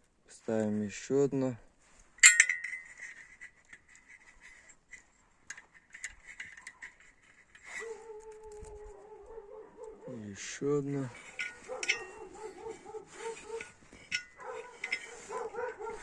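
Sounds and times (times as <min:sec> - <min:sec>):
metallic clicks of piston rings: 0:02.2 - 0:03.9, 0:11.1 - 0:16.0.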